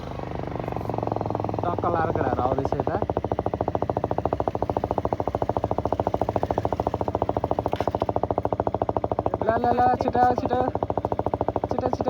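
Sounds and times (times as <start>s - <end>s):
motorcycle engine running: 0.0s - 12.0s.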